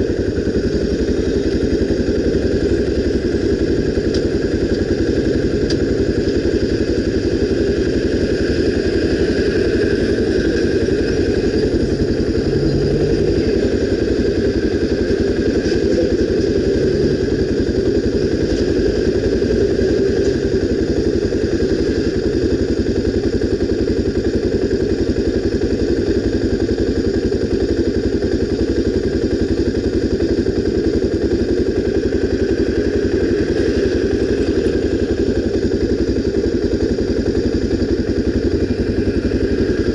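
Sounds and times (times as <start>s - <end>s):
motorcycle engine running steadily: 0.0s - 39.9s.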